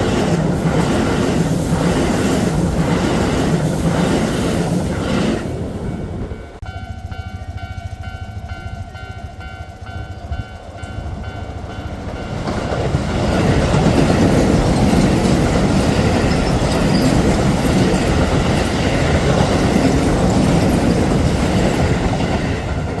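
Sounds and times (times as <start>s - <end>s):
train passing: 0.0s - 23.0s
crossing warning bell ringing: 5.5s - 23.0s.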